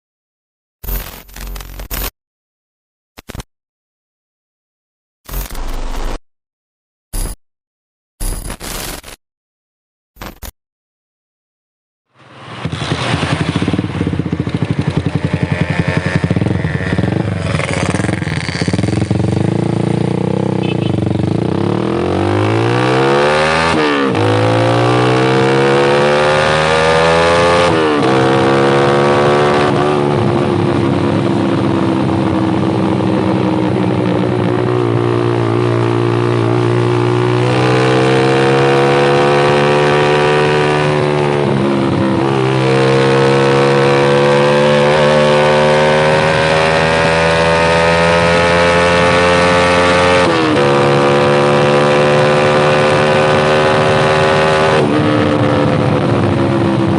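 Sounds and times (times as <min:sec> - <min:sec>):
motorcycle engine revving: 0:12.2 - 0:56.9.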